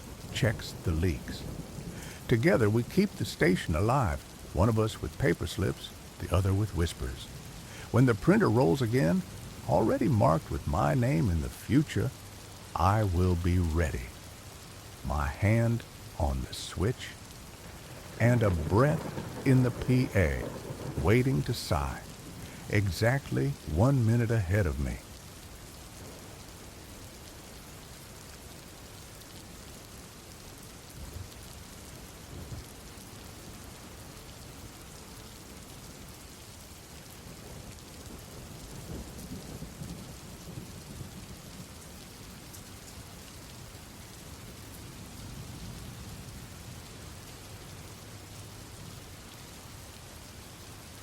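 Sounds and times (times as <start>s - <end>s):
steady rainfall: 0.0s - 51.0s
distant thunder rumbling: 14.9s - 24.0s.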